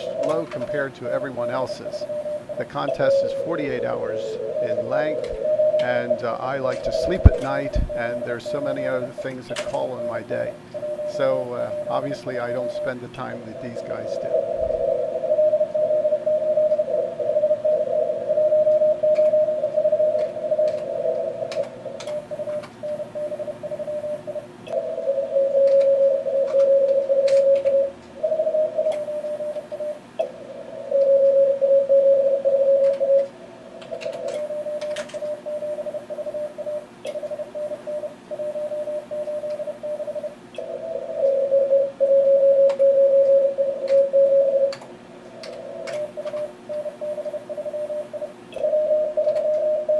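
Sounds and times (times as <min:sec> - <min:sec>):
radio band hiss: 0:00.0 - 0:24.5
morse code tones: 0:00.0 - 0:33.3, 0:33.9 - 0:44.8, 0:45.4 - 0:49.9.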